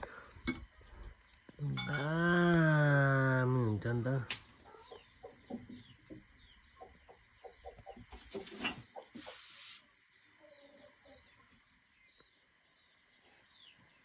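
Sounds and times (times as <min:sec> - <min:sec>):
faint bird chirps: 0:08.9 - 0:14.0.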